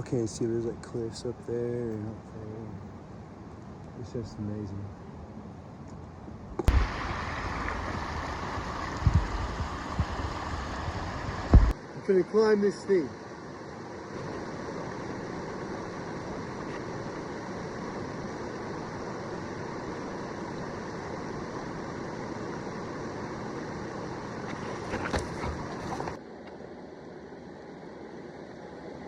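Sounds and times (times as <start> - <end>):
creek water rushing: 6.6 - 29.0.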